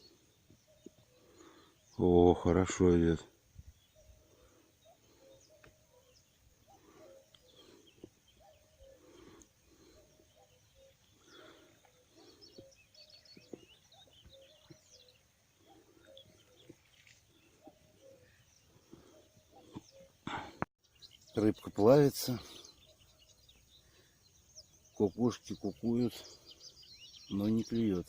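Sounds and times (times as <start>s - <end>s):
small birds chirping: 0.0s - 28.0s
cuckoo calling: 3.8s - 20.6s.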